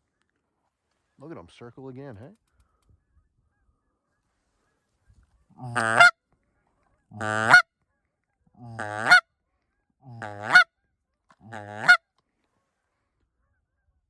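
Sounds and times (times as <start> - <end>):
goose call honks: 5.6 - 6.2, 7.1 - 7.6, 8.6 - 9.2, 10.1 - 10.7, 11.4 - 12.0.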